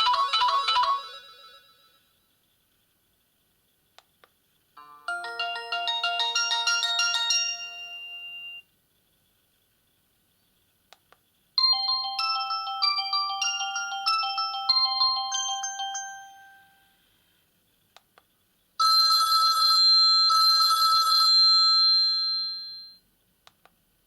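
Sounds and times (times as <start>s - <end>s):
mobile phone ringtone: 0.0s - 2.1s, 4.8s - 8.6s, 11.6s - 16.9s, 18.8s - 23.0s.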